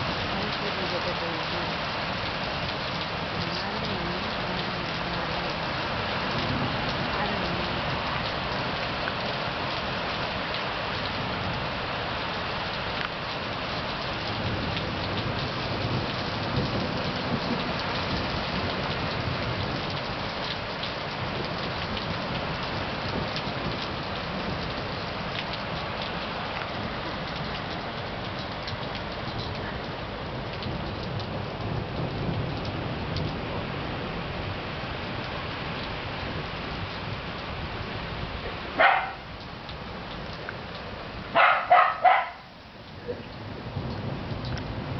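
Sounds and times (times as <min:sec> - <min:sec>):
heavy rain: 0:00.0 - 0:44.9
raindrop ticks: 0:00.1 - 0:33.5, 0:35.1 - 0:36.0, 0:36.8 - 0:37.6, 0:38.3 - 0:44.9
low thunder rumble: 0:06.3 - 0:08.3, 0:14.1 - 0:40.1, 0:41.1 - 0:44.9
dog barking: 0:38.8 - 0:39.3, 0:41.3 - 0:42.5.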